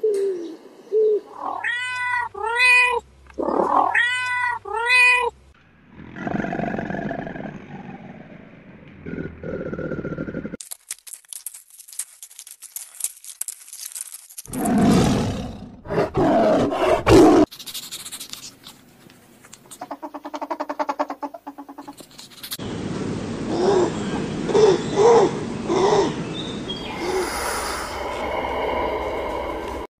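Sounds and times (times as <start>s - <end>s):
deep animal calls: 26.8s - 29.9s.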